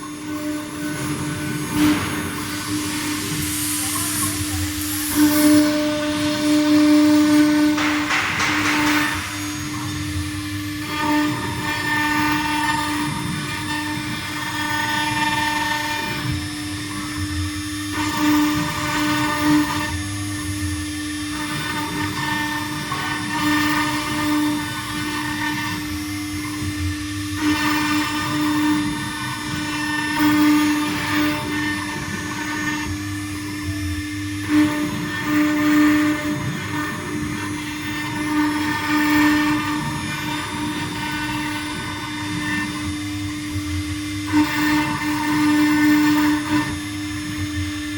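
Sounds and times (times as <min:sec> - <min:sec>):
bit grinding through stone: 0:00.0 - 0:16.2
router spindle whine: 0:00.0 - 0:47.9.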